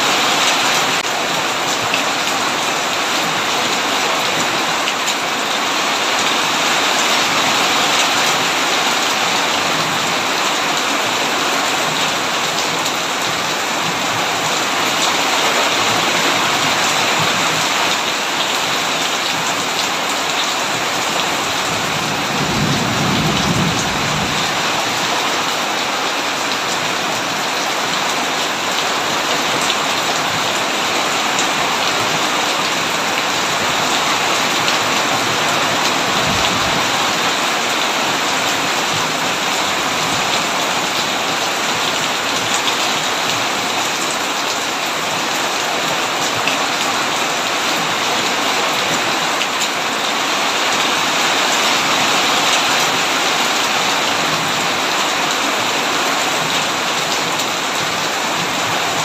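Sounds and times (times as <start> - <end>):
heavy rain on a tin roof: 0.0 - 59.0
low rumble of thunder: 21.7 - 24.9, 36.0 - 37.1.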